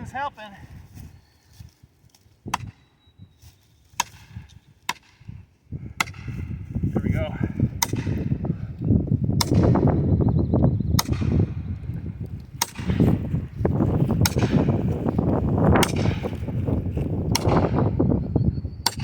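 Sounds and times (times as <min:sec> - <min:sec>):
wind rumble on microphone: 0:00.0 - 0:03.6, 0:04.2 - 0:19.0
axe striking a metal wedge: 0:15.8 - 0:16.3.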